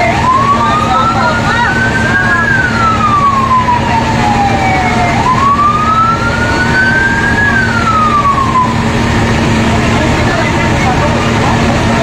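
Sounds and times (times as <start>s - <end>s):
fire truck siren wailing: 0.0s - 12.0s
street noise: 0.0s - 12.0s.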